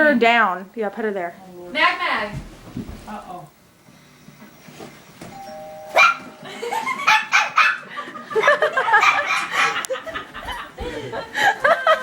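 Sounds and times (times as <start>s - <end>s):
doorbell chime: 5.3s - 6.9s
puppy barking: 6.0s - 6.3s, 7.0s - 9.9s
people laughing: 6.4s - 12.0s.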